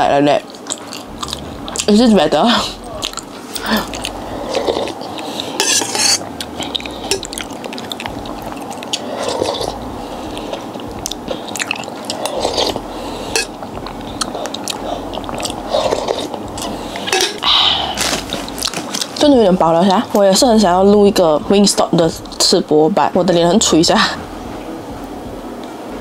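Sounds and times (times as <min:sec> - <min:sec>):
chewing and biting food: 0:00.4 - 0:02.0, 0:02.6 - 0:17.1, 0:18.0 - 0:19.2
dishes and cutlery clinking: 0:04.6 - 0:08.0, 0:17.0 - 0:17.4.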